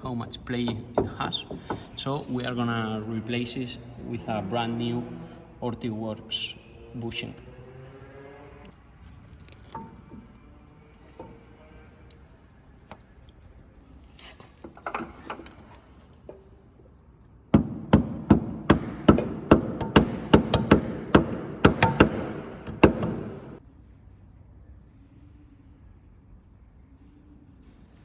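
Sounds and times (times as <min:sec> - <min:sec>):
tools clicking and clattering: 0:00.1 - 0:03.1, 0:09.3 - 0:10.4, 0:14.2 - 0:16.6
hammer striking metal: 0:00.4 - 0:02.9, 0:17.6 - 0:23.6.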